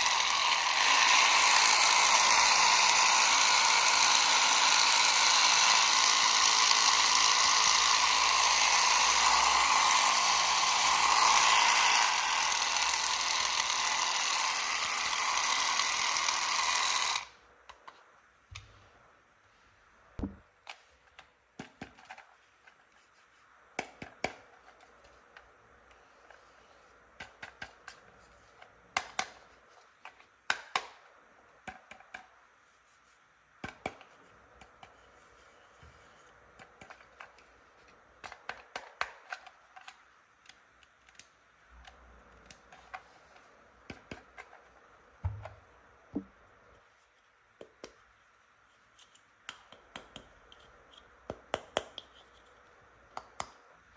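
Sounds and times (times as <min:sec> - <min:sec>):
plastic toy pieces clicking: 0:00.0 - 0:17.3.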